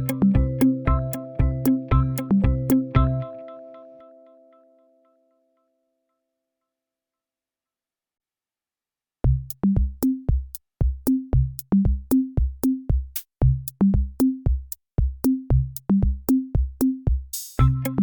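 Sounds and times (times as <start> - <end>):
electronic music with drum-machine beat: 0.0 - 3.4, 9.3 - 18.0.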